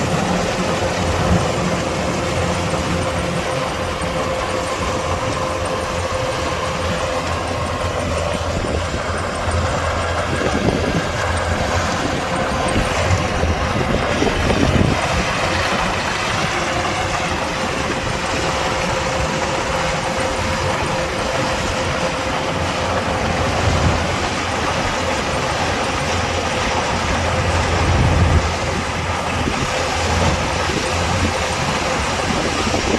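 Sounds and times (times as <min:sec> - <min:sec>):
combine harvester drone: 0:00.0 - 0:32.9.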